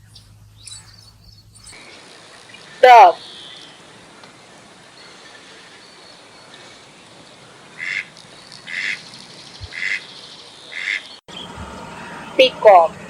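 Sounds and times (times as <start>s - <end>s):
duck quacking: 7.4s - 10.1s, 10.7s - 11.2s.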